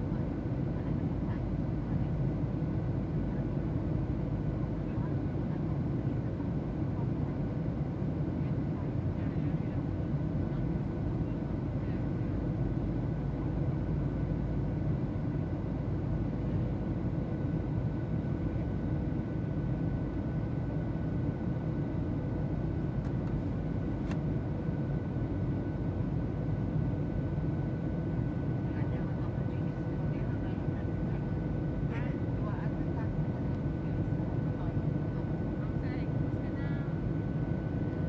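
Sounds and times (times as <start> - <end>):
airplane cabin low rumble: 0.0 - 38.0
small click: 24.0 - 24.2.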